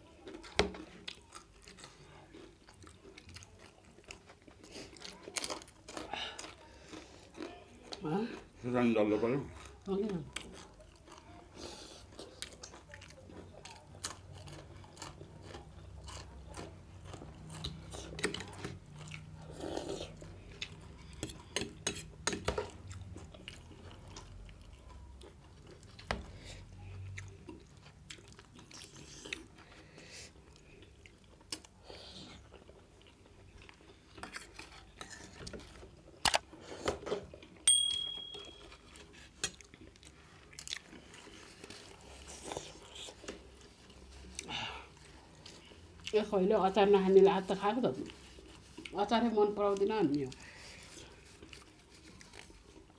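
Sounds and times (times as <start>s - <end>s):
chewing and biting food: 0.0s - 37.6s, 38.8s - 46.5s, 47.9s - 49.0s, 49.6s - 52.9s
short ringing clink: 37.7s - 38.8s.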